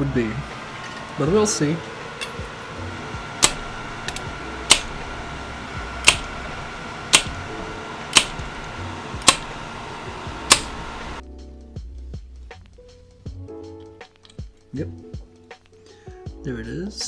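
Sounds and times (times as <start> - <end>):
sharp clicks: 3.4 - 11.2.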